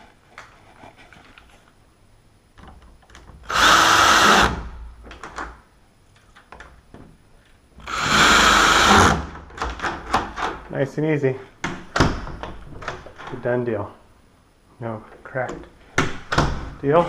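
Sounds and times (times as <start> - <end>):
power drill driving screws: 3.5 - 4.6, 7.8 - 9.3.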